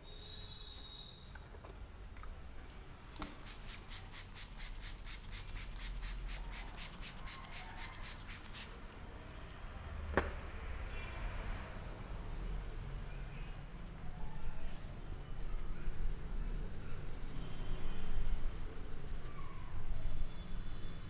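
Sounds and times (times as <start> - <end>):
hands rubbing hair and scalp: 3.2 - 8.8.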